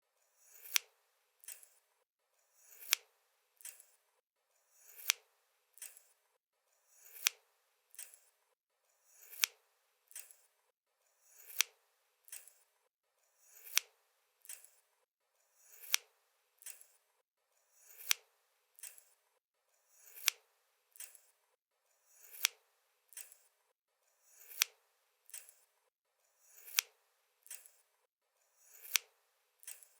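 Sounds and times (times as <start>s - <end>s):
scissors snipping: 0.5s - 1.8s, 2.7s - 4.0s, 4.9s - 5.2s, 5.8s - 6.1s, 7.0s - 8.3s, 9.2s - 10.5s, 11.4s - 12.6s, 13.6s - 14.8s, 15.8s - 17.0s, 17.9s - 19.1s, 20.1s - 20.4s, 21.0s - 21.3s, 22.2s - 23.5s, 24.4s - 25.7s, 26.6s - 27.8s, 28.7s - 29.9s
scissors soft click: 7.2s - 8.3s, 28.8s - 29.9s.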